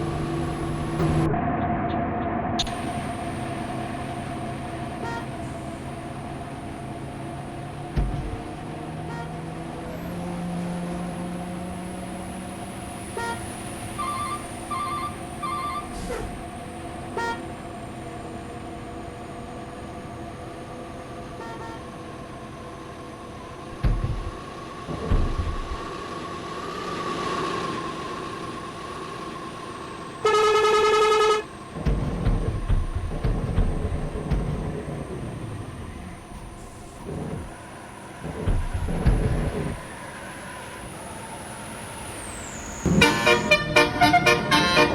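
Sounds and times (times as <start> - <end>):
road traffic engines: 0.0 - 44.9
loud horn blast: 4.9 - 5.6, 13.2 - 16.4, 21.4 - 21.9, 30.2 - 31.5, 42.9 - 44.9
short horn toots: 42.9 - 44.9.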